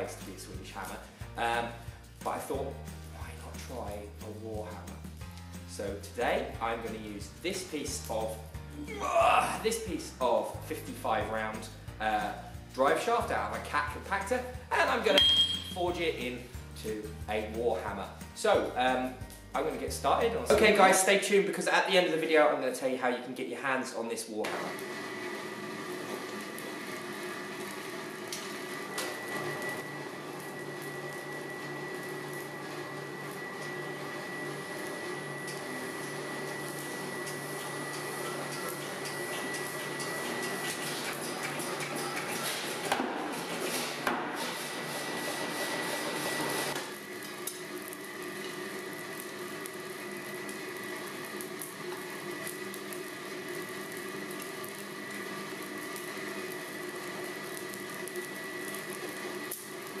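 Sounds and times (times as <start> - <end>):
high machinery whine: 28.7 - 41.5.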